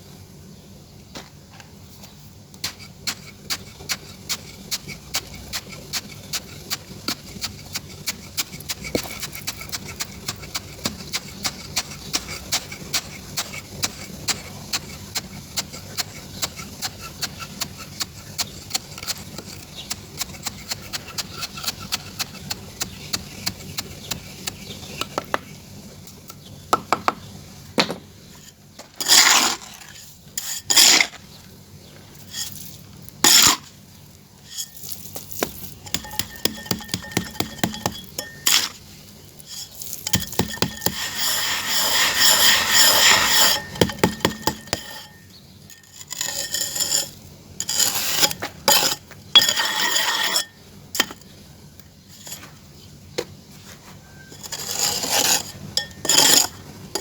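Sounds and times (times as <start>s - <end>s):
scraping across pot: 2.0s - 26.6s, 28.2s - 51.4s, 52.0s - 52.6s, 53.6s - 57.0s
spoon tapping on small pot: 35.9s - 38.5s.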